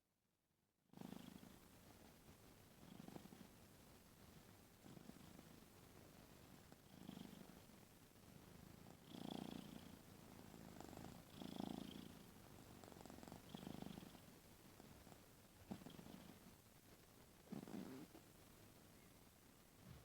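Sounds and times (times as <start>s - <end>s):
cat snoring: 0.9s - 1.6s, 2.8s - 3.5s, 4.8s - 5.4s, 6.8s - 7.6s, 8.6s - 14.3s, 15.7s - 16.4s, 17.5s - 18.2s.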